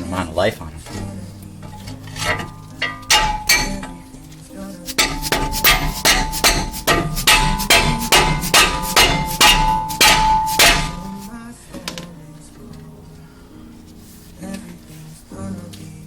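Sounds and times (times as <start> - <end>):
hammer blows on metal: 1.7 - 4.1, 4.9 - 11.4.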